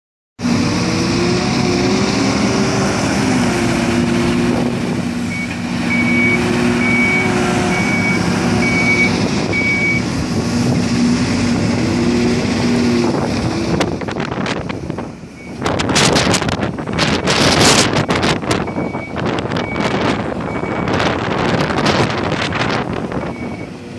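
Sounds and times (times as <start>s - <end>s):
diesel machinery engine working: 0.4s - 23.9s
reversing alarm beeping: 5.3s - 10.1s, 17.1s - 21.0s, 23.2s - 23.7s.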